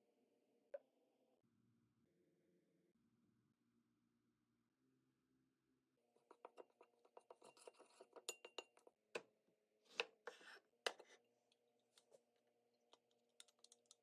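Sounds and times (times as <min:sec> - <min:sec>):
small scraping clicks: 0:13.0 - 0:14.0.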